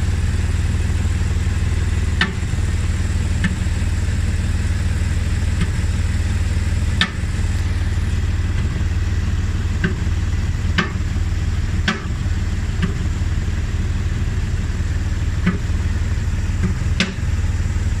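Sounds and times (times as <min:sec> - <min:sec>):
car engine running: 0:00.0 - 0:18.0
sharp engine knock: 0:02.1 - 0:02.6, 0:07.0 - 0:07.4, 0:09.7 - 0:11.2, 0:11.8 - 0:13.2, 0:15.4 - 0:15.8, 0:16.6 - 0:17.3.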